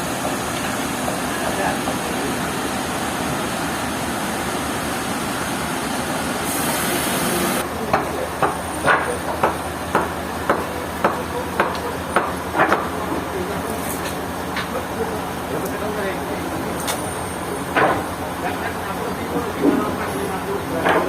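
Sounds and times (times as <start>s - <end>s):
steady machinery noise: 0.0s - 21.0s
short high hiss: 6.4s - 7.6s
sharp knocks like hammer blows: 7.9s - 12.9s.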